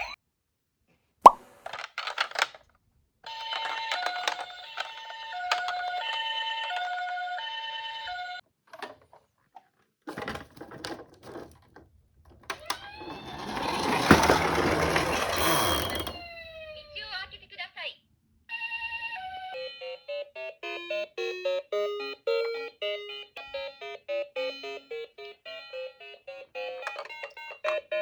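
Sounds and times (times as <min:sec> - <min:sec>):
toy siren two-tone wail: 0:12.6 - 0:13.6, 0:15.7 - 0:17.0, 0:18.5 - 0:28.0.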